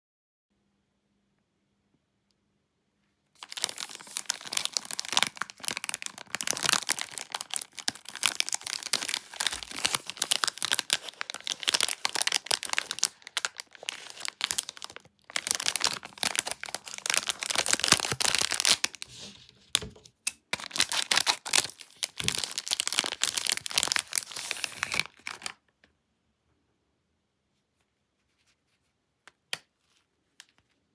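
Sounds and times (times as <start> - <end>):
plastic wrapper crinkling and tearing: 3.4 - 25.6.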